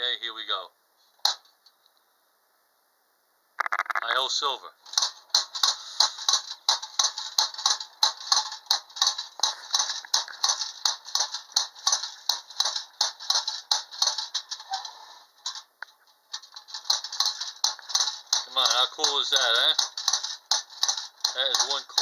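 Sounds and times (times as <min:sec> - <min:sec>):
clockwork toy ticking: 0:04.9 - 0:14.8, 0:16.3 - 0:22.0.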